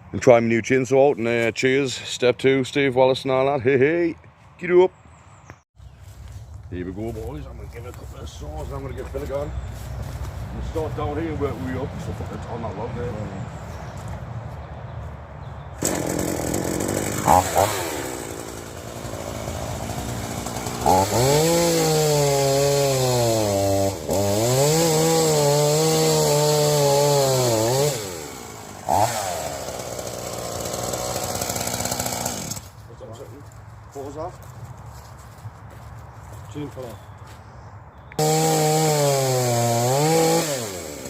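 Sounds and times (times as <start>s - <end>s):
chainsaw cutting log: 15.8s - 32.8s, 38.2s - 41.0s.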